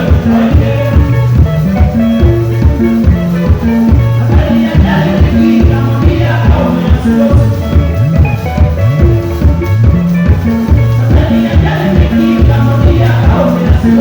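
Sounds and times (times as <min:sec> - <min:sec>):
faint singing: 0:00.0 - 0:01.9, 0:03.0 - 0:07.9, 0:11.0 - 0:14.0
bass line: 0:00.0 - 0:14.0
steady drum beat: 0:00.0 - 0:14.0.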